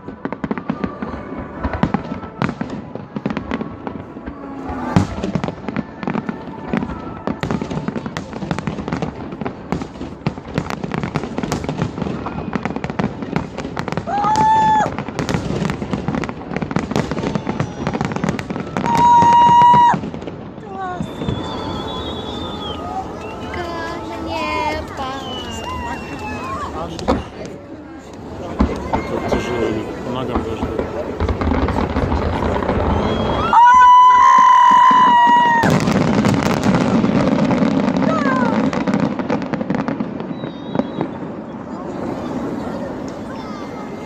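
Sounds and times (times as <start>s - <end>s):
fireworks crackling pops: 0.0s - 44.0s
whistle-like tones: 21.0s - 23.6s, 25.0s - 26.7s, 32.8s - 33.6s, 40.3s - 41.2s.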